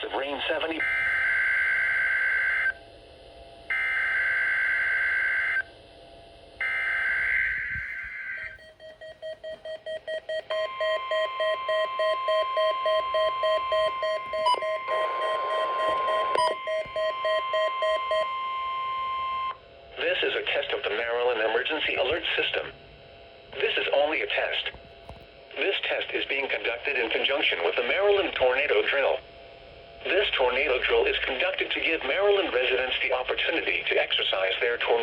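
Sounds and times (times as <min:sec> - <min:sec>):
steady warning alarm tone: 0:00.0 - 0:26.7
rapidly pulsing beep: 0:06.6 - 0:19.6
screeching digital header tones: 0:06.6 - 0:19.6.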